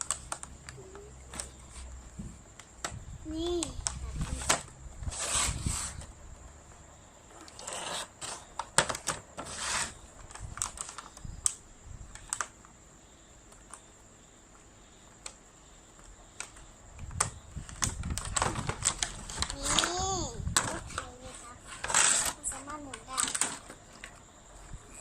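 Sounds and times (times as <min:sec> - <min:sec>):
plastic packaging being cut open: 0:21.7 - 0:22.4.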